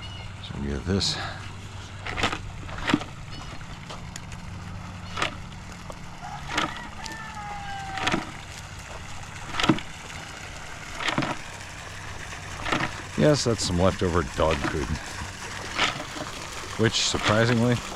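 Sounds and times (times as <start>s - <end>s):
steady low hum: 0.0s - 17.9s
footsteps on farm ground: 2.2s - 4.4s.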